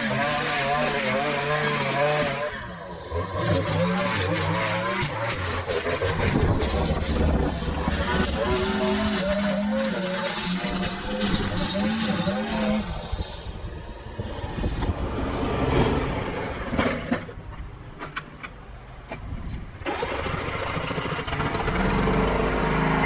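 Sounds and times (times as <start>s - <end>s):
small gas engine running: 0.0s - 13.6s, 19.8s - 23.0s.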